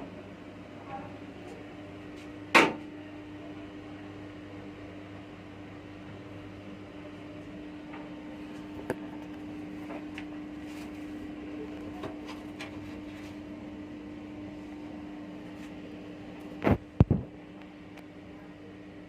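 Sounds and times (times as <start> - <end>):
steady electrical hum: 0.0 - 19.0.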